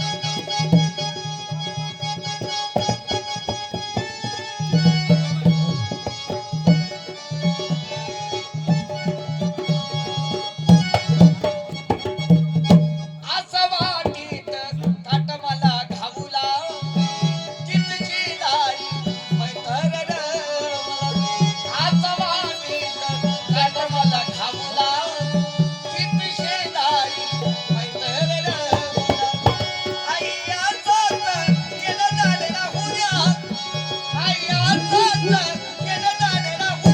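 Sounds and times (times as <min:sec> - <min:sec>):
bending melodic lead line: 0:00.0 - 0:12.2, 0:28.5 - 0:36.9
hand drum rhythm: 0:00.0 - 0:20.4, 0:21.1 - 0:36.9.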